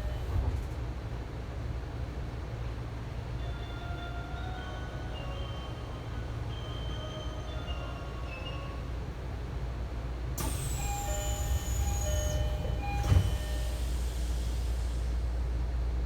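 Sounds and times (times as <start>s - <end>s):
train doors shutting thump: 10.4s - 14.5s.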